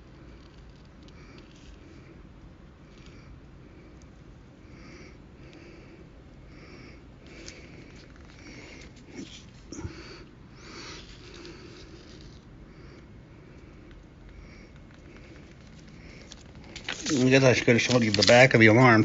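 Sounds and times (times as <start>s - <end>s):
paper rustle: 15.0s - 19.0s.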